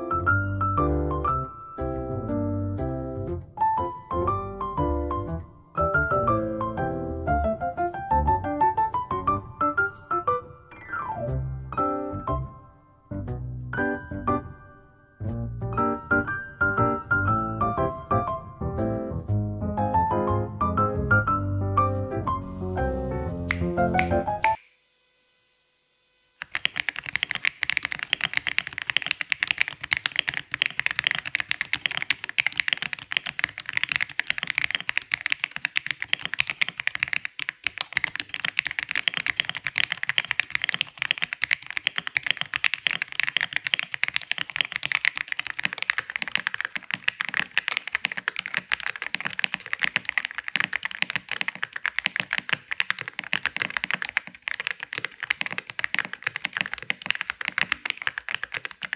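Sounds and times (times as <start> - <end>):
mechanical keyboard typing: 23.5 - 24.6, 26.4 - 58.9.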